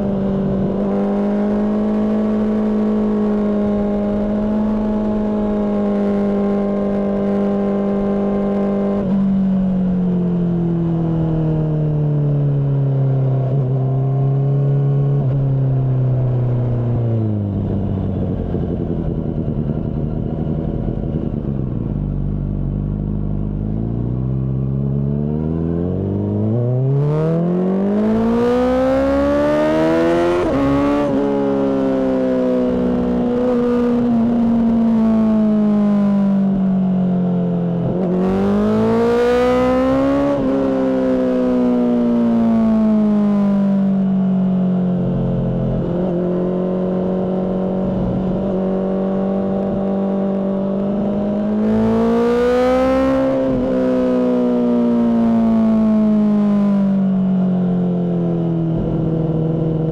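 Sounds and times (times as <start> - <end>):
loud motorcycle engine revving: 23.5 - 36.7, 37.8 - 43.6, 45.0 - 57.0.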